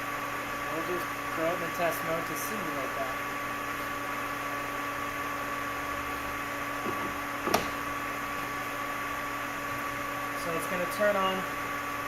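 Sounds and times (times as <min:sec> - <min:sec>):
electrical hum with high whine: 0:00.0 - 0:12.0.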